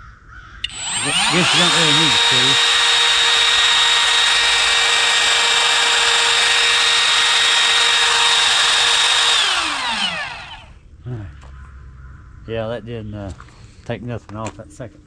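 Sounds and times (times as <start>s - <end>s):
router whining: 0.6s - 10.8s.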